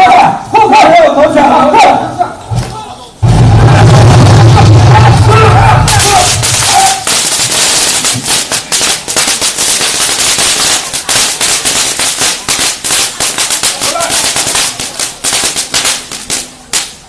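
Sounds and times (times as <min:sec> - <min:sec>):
firecrackers cracking: 0:02.4 - 0:17.0
low hum: 0:03.2 - 0:06.7
person shouting: 0:04.6 - 0:07.1.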